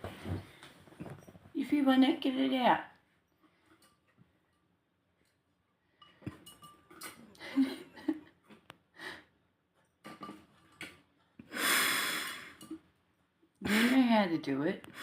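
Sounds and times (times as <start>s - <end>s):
close breathing: 11.4s - 12.6s.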